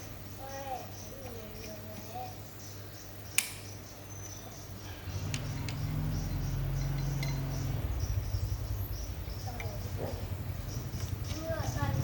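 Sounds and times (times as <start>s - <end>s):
insects chirping: 0.0s - 12.0s
sharp click: 3.3s - 3.8s.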